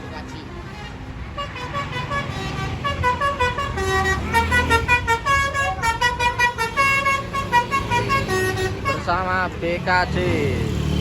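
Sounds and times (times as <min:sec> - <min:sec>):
bus engine rumble: 0:00.0 - 0:11.0
bus horn playing melody: 0:00.6 - 0:09.2.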